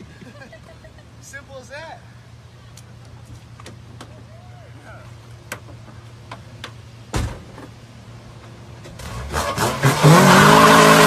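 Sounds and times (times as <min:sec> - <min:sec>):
thump: 0:07.1 - 0:07.7
vehicle engine revving: 0:08.8 - 0:11.0.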